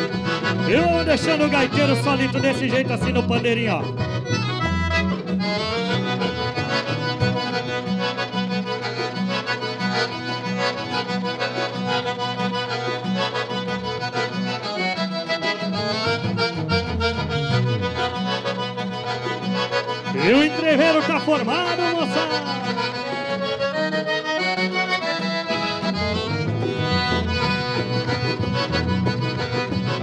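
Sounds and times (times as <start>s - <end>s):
accordion playing dance tune: 0.0s - 30.0s.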